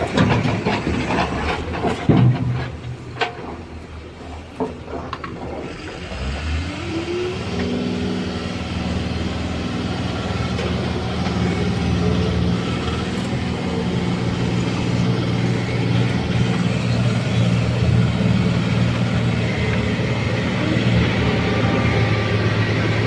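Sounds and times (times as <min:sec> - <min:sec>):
diesel engine revving: 0:05.5 - 0:23.0.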